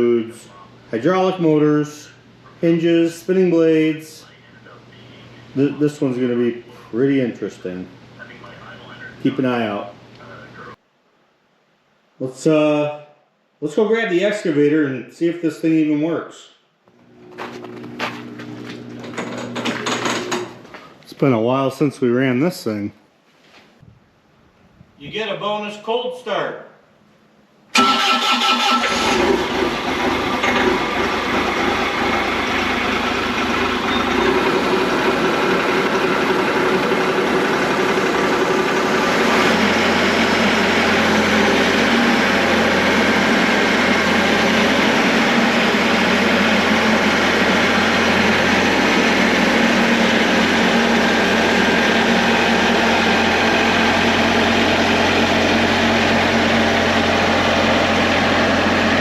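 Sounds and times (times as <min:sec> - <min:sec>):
diesel engine cranking: 0:27.7 - 0:59.0
diesel engine idling: 0:27.8 - 0:59.0.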